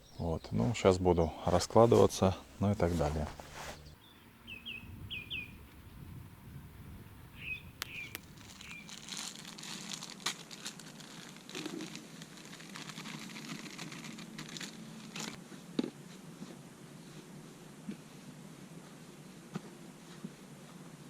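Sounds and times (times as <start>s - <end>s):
bird chirping: 0.0s - 6.1s, 7.2s - 9.0s
fishing gear rustling and crinkling: 0.6s - 4.0s, 8.1s - 15.4s.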